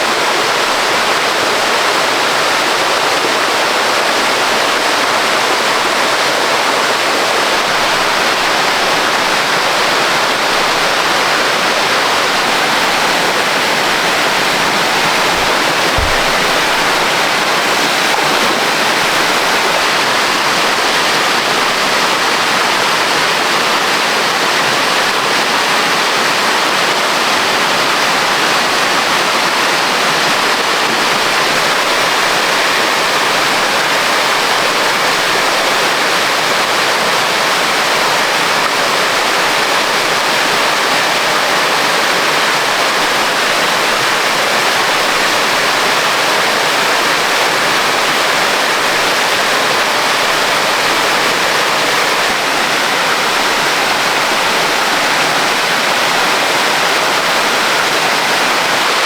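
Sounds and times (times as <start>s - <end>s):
waterfall rapids rushing: 0.0s - 59.0s.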